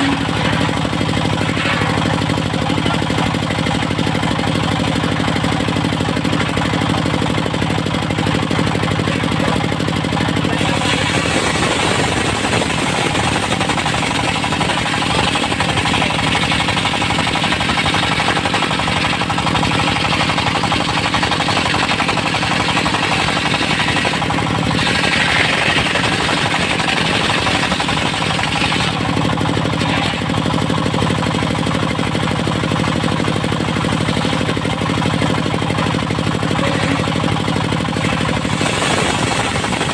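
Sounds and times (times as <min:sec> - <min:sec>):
saw blade cutting log: 0:00.0 - 0:05.0, 0:06.3 - 0:30.5, 0:34.0 - 0:39.9
sawmill engine running: 0:00.0 - 0:39.9.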